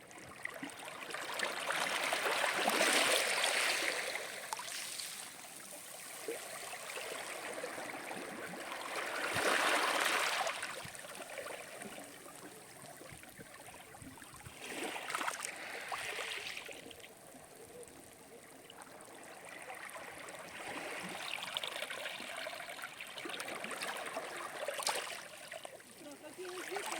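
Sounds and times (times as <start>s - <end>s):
sea waves breaking on shore: 1.2s - 11.7s, 14.5s - 16.8s.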